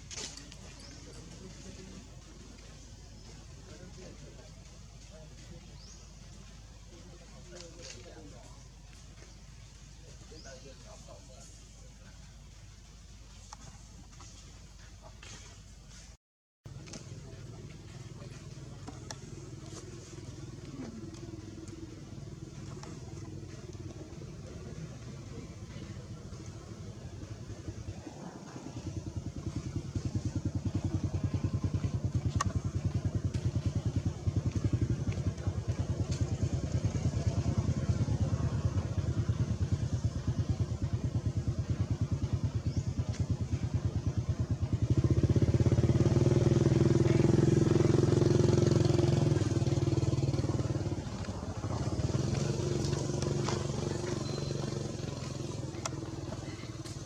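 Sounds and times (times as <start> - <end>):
small engine running: 16.7 - 57.0.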